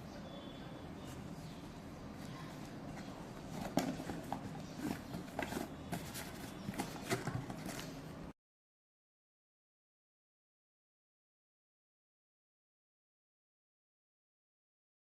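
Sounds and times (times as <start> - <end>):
low background hum: 0.0 - 8.4.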